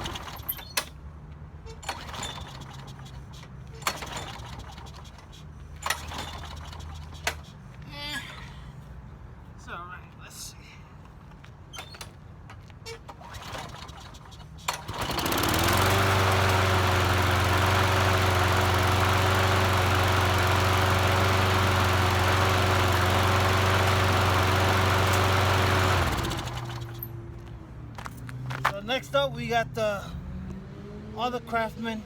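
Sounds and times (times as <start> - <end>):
small lawn mower engine running: 0.0 - 0.7, 1.8 - 7.4, 13.1 - 27.2.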